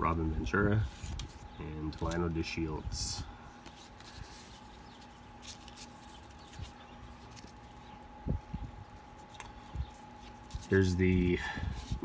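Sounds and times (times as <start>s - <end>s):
steady faint hum: 0.0s - 12.0s
cards rustling and ticking: 0.8s - 2.6s, 3.6s - 8.1s, 8.8s - 12.0s.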